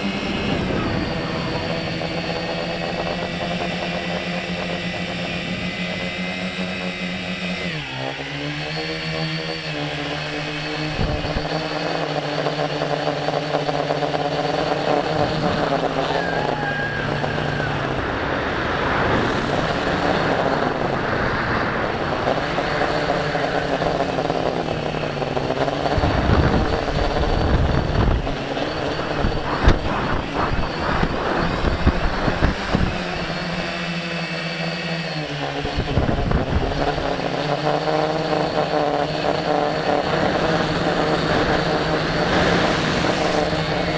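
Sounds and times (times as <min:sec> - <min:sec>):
electric motors and propellers whirring: 0:00.0 - 0:43.9
rough low rumble with knocks: 0:25.9 - 0:33.0.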